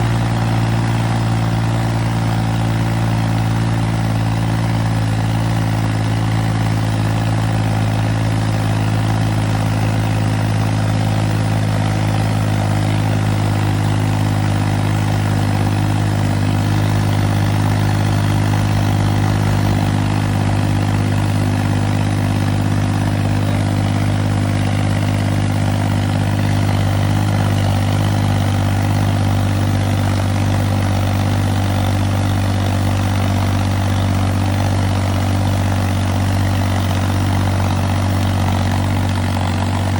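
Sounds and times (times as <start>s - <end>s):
tractor engine idling low: 0.0s - 39.9s.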